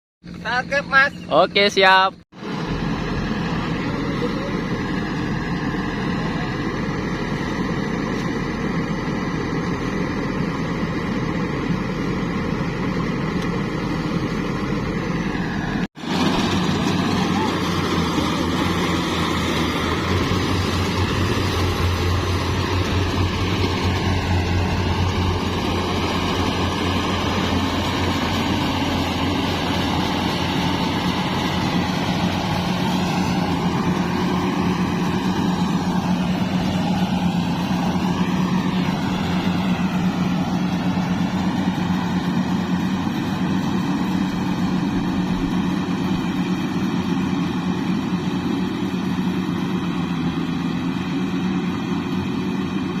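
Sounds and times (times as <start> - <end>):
diesel engine drone: 0.2 - 53.0.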